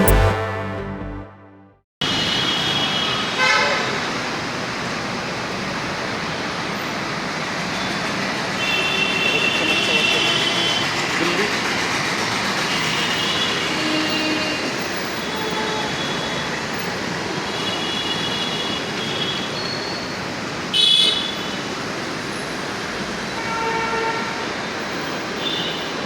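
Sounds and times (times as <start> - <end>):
loud high-pitched sound: 0.0 - 1.8
city road traffic: 2.0 - 26.0.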